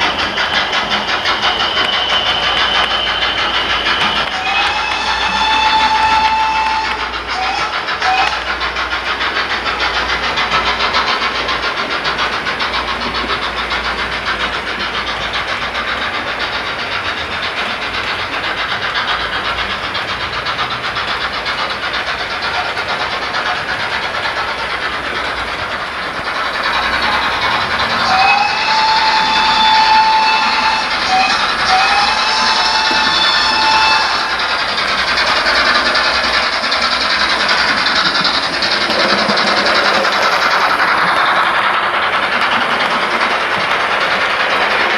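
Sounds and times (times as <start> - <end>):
steam exhaust beats: 0.0 - 44.9
steam locomotive whistle: 0.0 - 44.9.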